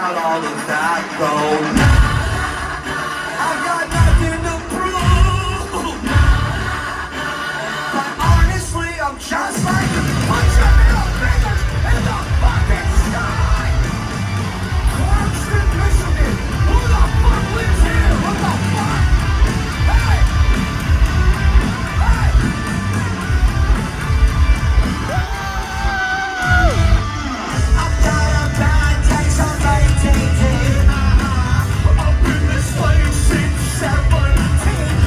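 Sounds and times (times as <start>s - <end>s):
crowd yelling and singing along: 0.0s - 35.0s
live rock band playing: 9.6s - 35.0s.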